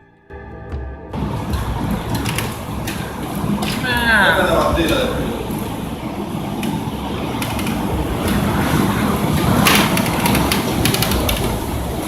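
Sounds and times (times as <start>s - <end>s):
wind rumbling over microphone: 1.1s - 12.0s
sharp knocks and rattles: 4.6s - 12.0s.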